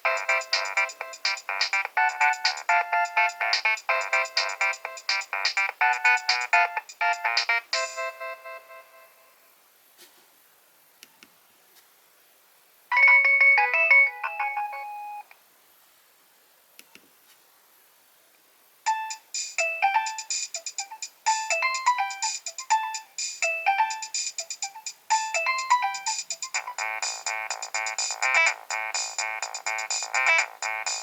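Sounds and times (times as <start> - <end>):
phone ringtone melody: 0.0 - 9.0, 12.9 - 15.2, 18.9 - 31.0.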